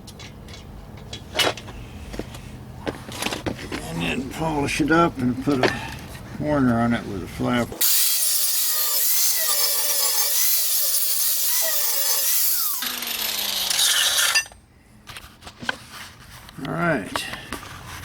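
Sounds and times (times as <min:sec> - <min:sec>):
angle grinder sanding metal: 0:07.8 - 0:14.5.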